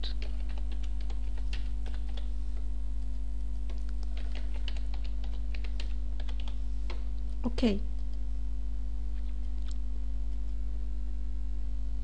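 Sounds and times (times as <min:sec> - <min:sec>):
keyboard typing: 0:00.0 - 0:02.3, 0:03.6 - 0:07.0
low electrical hum: 0:00.0 - 0:12.0.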